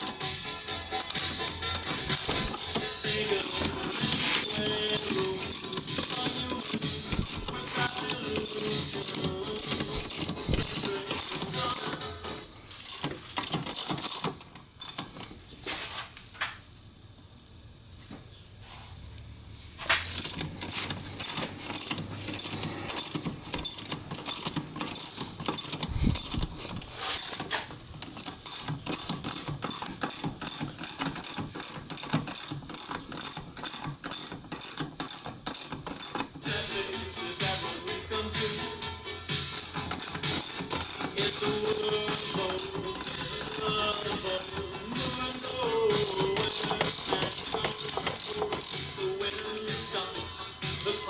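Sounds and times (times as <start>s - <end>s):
ratchet wrench clicking: 0.0s - 15.2s, 19.9s - 51.0s.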